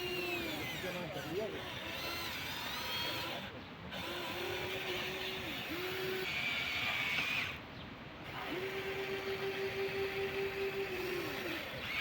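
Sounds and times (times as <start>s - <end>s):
higher-pitched motor whine: 0.0s - 7.6s, 8.2s - 12.0s
small electric motors whining: 0.0s - 12.0s.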